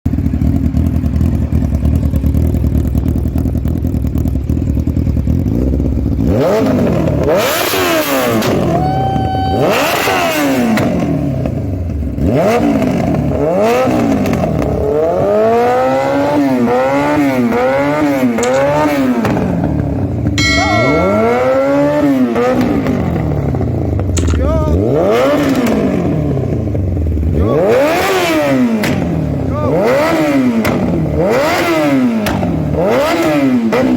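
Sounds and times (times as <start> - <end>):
motorcycle engine idling and revving: 0.0 - 33.9
exhaust pops and crackles: 28.8 - 29.4.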